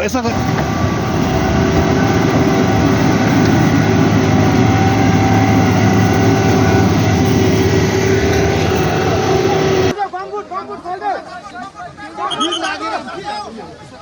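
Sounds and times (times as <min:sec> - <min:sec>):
vehicle engine running: 0:00.0 - 0:10.0.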